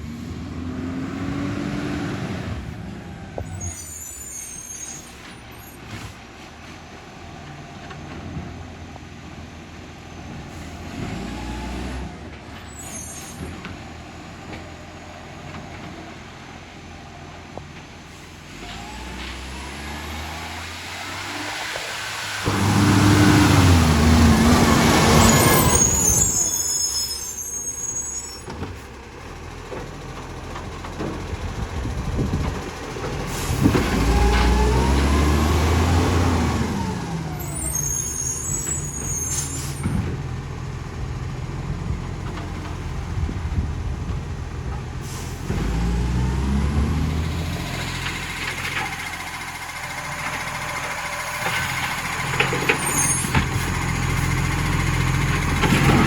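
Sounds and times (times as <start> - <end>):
truck diesel engine revving: 0.0 - 4.8, 10.0 - 56.0
air brakes hissing: 3.4 - 6.8, 12.6 - 13.6, 18.0 - 19.4, 24.6 - 29.0, 33.3 - 34.6, 37.3 - 40.0, 45.0 - 45.7.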